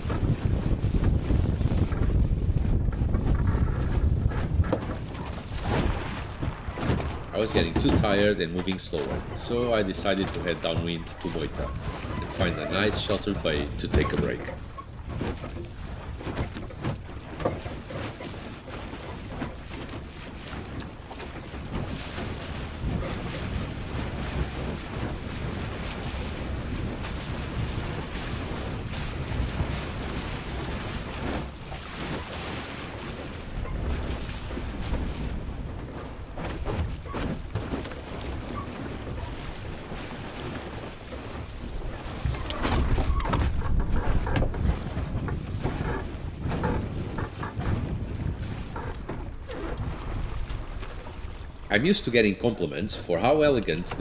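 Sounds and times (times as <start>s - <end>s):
wind buffeting microphone: 0.0s - 52.6s
water splashing along boat hull: 0.0s - 54.0s.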